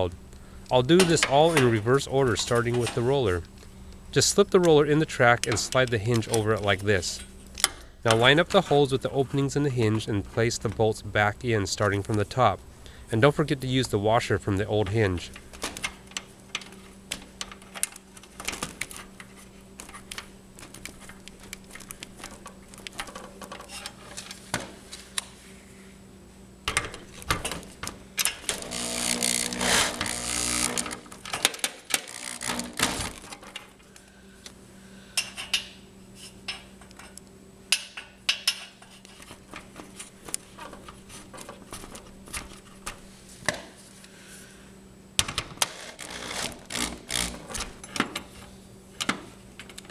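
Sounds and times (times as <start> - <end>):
power tool noise: 28.5 - 33.3, 45.6 - 47.8.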